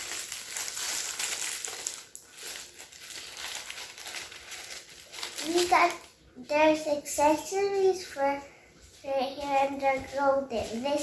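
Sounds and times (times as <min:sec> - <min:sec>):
wrapping paper tearing and crumpling: 0:00.0 - 0:06.2.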